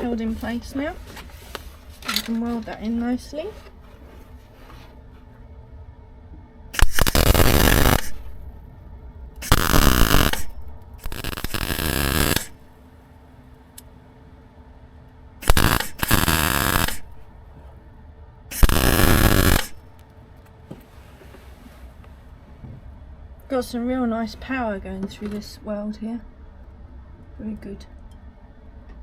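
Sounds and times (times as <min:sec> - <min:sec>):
electric welding arc crackling: 0:06.8 - 0:08.4, 0:09.4 - 0:12.7, 0:15.4 - 0:17.3, 0:18.5 - 0:20.0.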